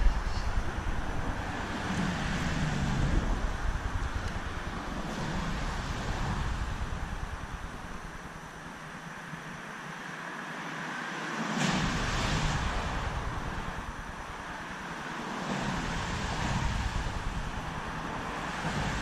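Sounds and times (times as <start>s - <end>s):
vehicle passing rumble: 0.0s - 9.7s
tyre noise hiss: 0.0s - 19.0s.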